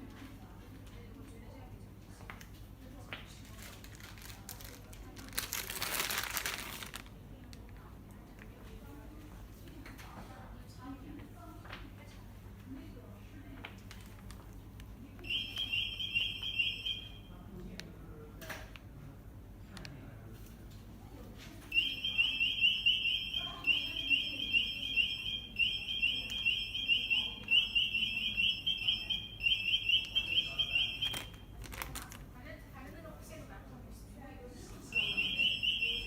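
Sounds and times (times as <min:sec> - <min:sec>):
security gate alarm beeping: 0:15.2 - 0:17.4, 0:21.7 - 0:31.5, 0:34.9 - 0:36.0.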